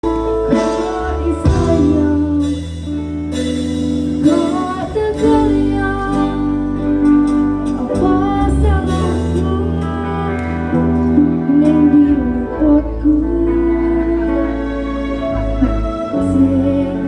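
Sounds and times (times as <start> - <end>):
instrumental accompaniment: 0.0 - 17.0
person singing: 0.0 - 17.0
steady bass: 0.0 - 17.0.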